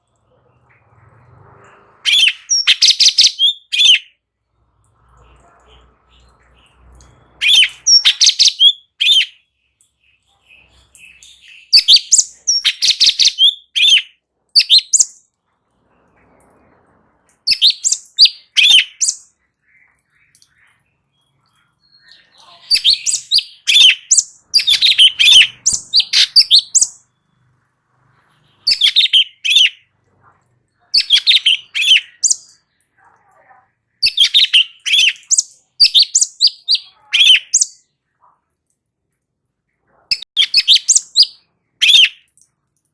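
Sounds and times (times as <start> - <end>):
bird singing rapid high notes: 2.0 - 4.2, 5.7 - 15.2, 17.5 - 27.2, 28.4 - 29.9, 30.9 - 32.8, 34.0 - 37.8, 40.1 - 42.3.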